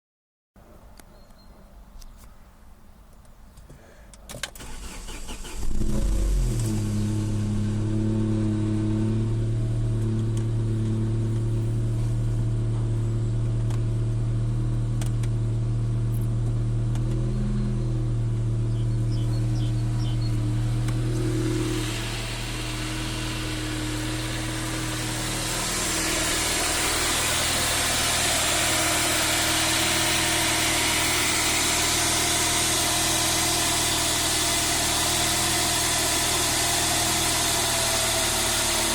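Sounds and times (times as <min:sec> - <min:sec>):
engine starter cranking: 0:04.4 - 0:06.8
car engine idling: 0:04.6 - 0:38.9
engine rattle: 0:04.6 - 0:38.9.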